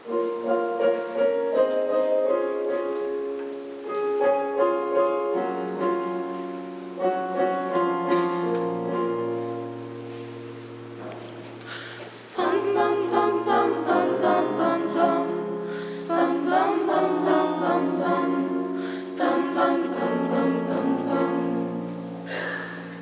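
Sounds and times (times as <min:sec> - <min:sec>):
voices singing together: 0:12.3 - 0:23.0.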